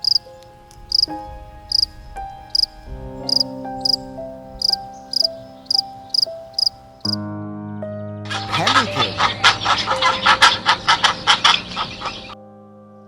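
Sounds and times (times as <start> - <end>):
high cricket-like chirps: 0.0 - 0.3, 0.9 - 1.1, 1.7 - 1.9, 2.5 - 4.0, 4.6 - 7.2
background music with keyboard: 0.0 - 13.0.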